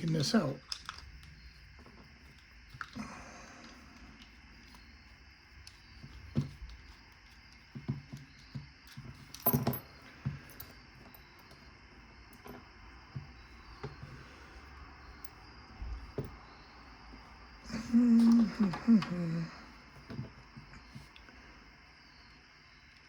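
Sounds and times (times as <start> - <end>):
padlock clicks and knocks: 7.8 - 11.6.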